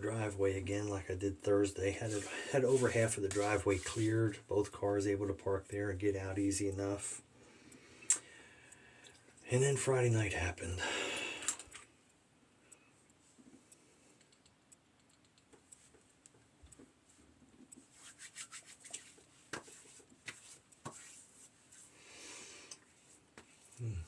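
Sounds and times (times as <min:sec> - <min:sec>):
hands rubbing on skin: 0:02.0 - 0:04.1, 0:17.8 - 0:21.9
light clicks and taps: 0:11.4 - 0:21.9.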